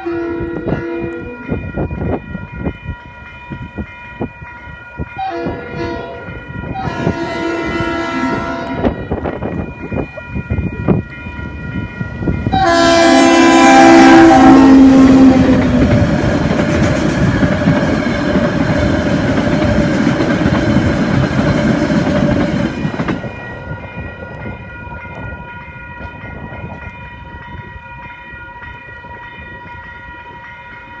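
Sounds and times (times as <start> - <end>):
locomotive horn chord: 5.2 - 9.1, 12.5 - 15.9.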